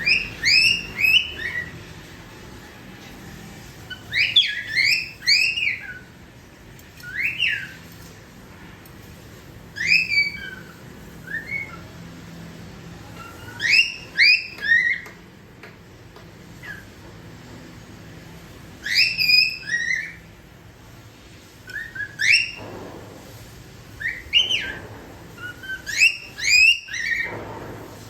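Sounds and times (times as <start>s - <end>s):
cockatiel whistling: 0.0s - 1.8s, 3.9s - 6.1s, 7.0s - 7.8s, 9.8s - 12.0s, 13.1s - 15.2s, 16.6s - 17.0s, 18.8s - 20.2s, 21.6s - 22.7s, 24.0s - 27.4s.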